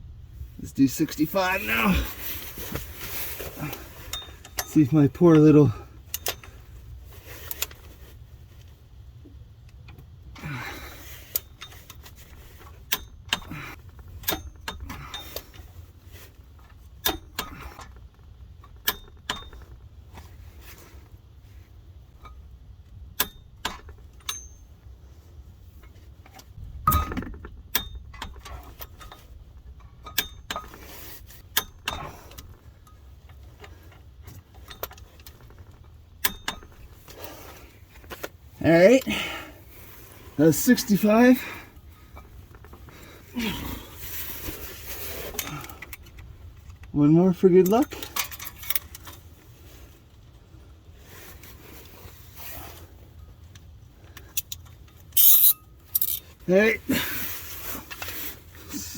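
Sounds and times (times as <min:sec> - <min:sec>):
ratchet clicking: 0:54.3 - 0:56.2
torque wrench setting click: 0:55.2 - 0:56.2.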